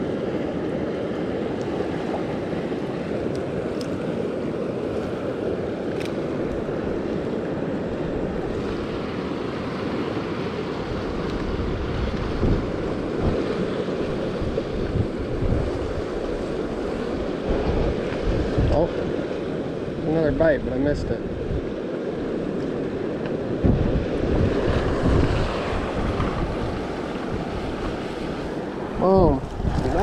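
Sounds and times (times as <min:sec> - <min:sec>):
creek water flowing: 0:00.0 - 0:30.0
wind buffeting microphone: 0:00.0 - 0:30.0.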